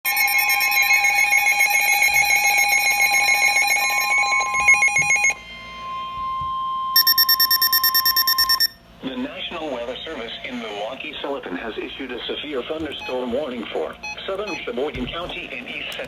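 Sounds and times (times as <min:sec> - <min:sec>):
steady electronic alert tone: 0:00.1 - 0:05.4, 0:07.0 - 0:08.8
buzzy pulsing beeps: 0:07.0 - 0:08.8.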